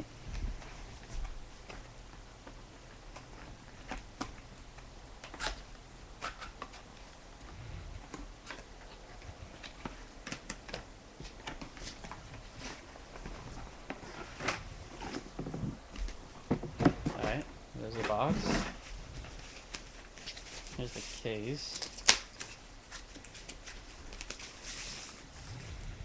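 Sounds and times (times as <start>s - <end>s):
cardboard packaging being opened: 17.2s - 25.6s.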